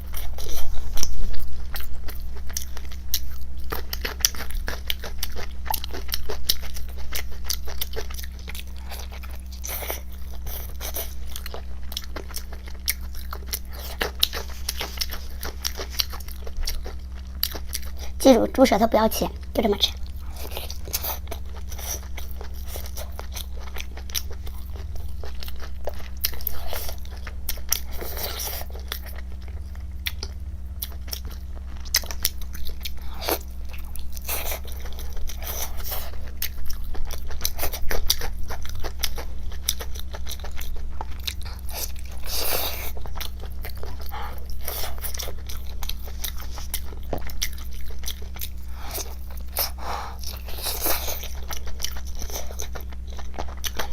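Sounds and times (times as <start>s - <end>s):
person chewing crunchy food: 0.0s - 18.3s, 19.3s - 53.9s
low electrical hum: 0.0s - 53.9s.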